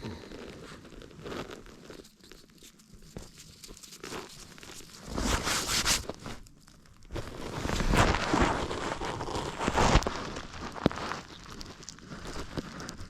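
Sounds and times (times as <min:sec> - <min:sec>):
rustling and crunching: 0:00.0 - 0:13.0.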